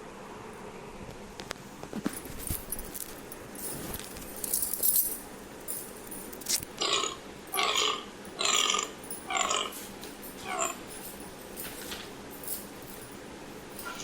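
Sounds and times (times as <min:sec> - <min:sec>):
deer calling: 0:06.8 - 0:09.8, 0:10.4 - 0:10.8.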